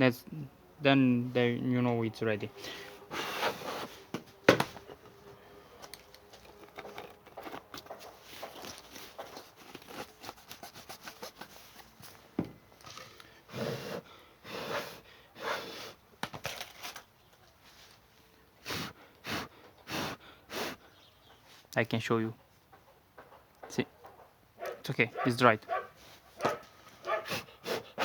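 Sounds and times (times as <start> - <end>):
breath puffs: 2.6 - 4.2, 12.9 - 16.0, 18.6 - 21.2, 25.9 - 28.0
rubber tube clicks and rustles: 5.8 - 13.3, 16.2 - 17.6.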